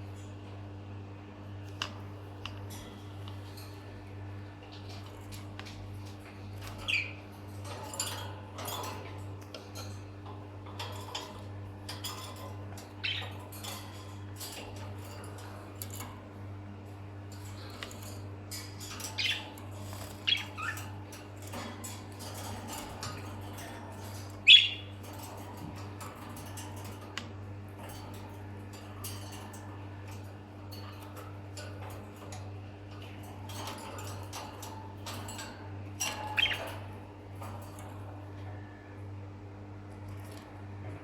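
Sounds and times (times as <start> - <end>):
lovebirds squawky chirps: 24.4 - 25.0, 36.2 - 36.7.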